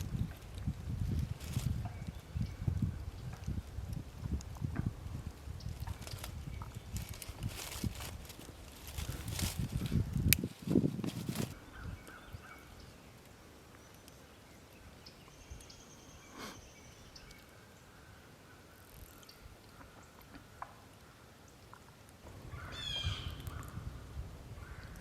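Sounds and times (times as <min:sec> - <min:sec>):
faint thin bird calls: 0:22.6 - 0:23.8.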